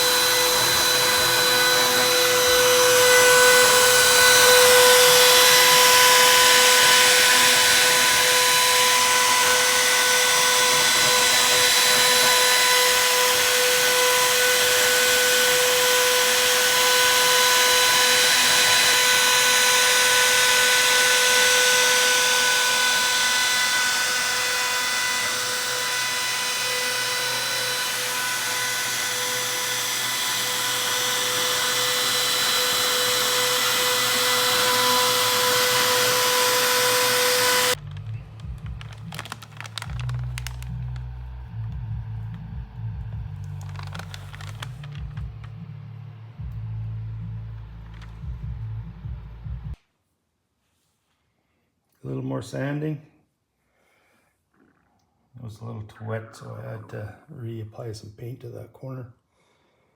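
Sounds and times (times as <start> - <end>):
router spindle cutting wood: 0.0 - 40.7, 43.4 - 45.3.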